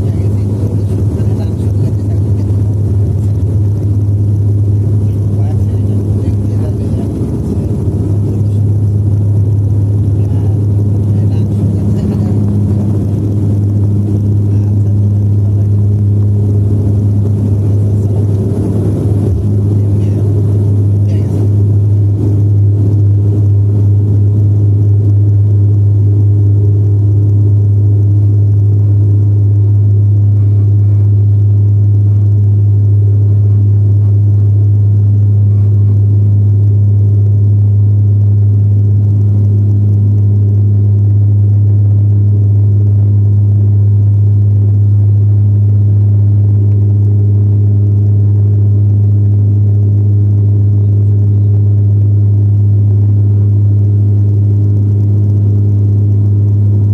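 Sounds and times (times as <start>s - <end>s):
propeller drone in aircraft cabin: 0.0s - 56.9s.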